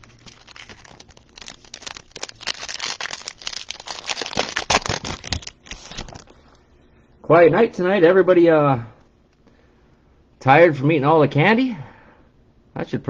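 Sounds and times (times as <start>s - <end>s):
foil wrapper crinkling and tearing: 0.0s - 6.5s.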